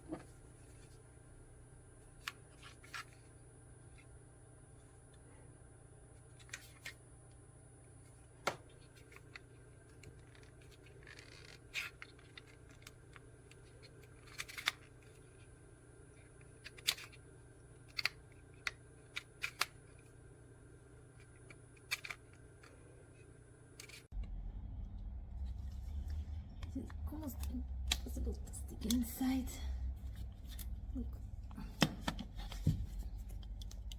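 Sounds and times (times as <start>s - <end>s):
faint low hum: 0.0s - 33.9s
plastic clicks and scrapes: 8.7s - 15.5s, 16.1s - 20.2s, 21.1s - 24.1s.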